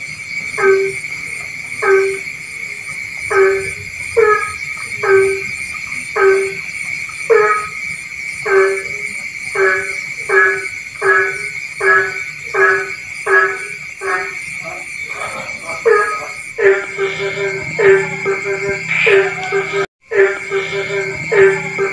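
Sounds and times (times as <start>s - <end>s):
frogs croaking: 0.0s - 21.9s
high-pitched drone: 3.2s - 6.7s, 7.3s - 7.8s, 8.5s - 21.9s.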